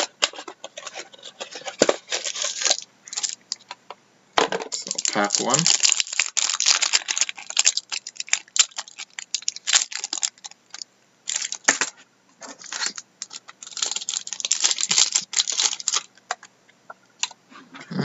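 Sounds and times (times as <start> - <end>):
card pack wrapper tearing and crinkling: 0.0 - 3.7, 4.7 - 11.9, 12.6 - 16.1.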